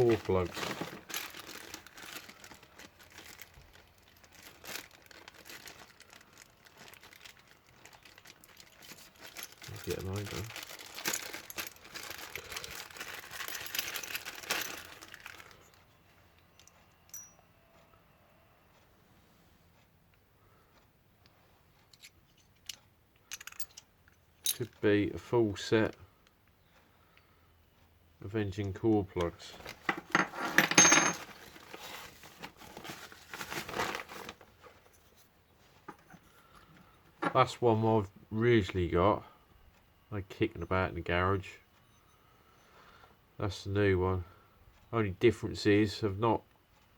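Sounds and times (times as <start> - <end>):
packaging crinkling: 0.0 - 15.8, 31.2 - 34.9.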